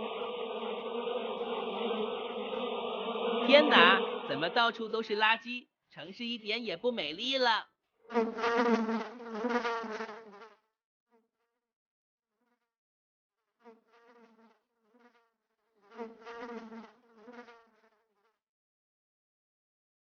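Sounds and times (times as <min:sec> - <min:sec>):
cartoon flies buzzing: 0:00.0 - 0:05.1, 0:08.1 - 0:10.5.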